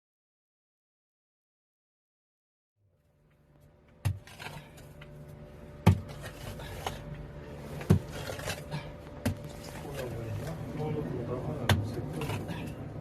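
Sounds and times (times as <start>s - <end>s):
low mechanical hum: 2.8s - 13.0s.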